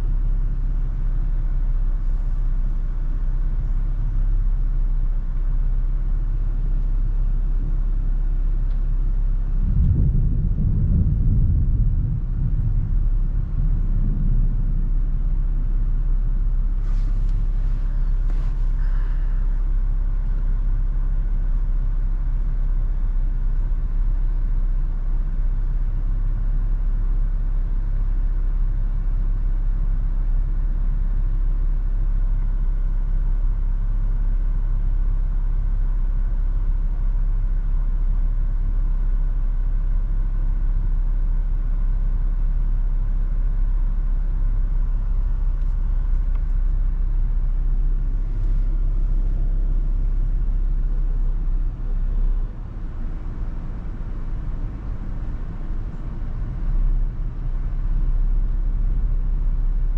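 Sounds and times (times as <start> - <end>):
road and wind noise rumble: 0.0 - 31.3, 38.6 - 59.9.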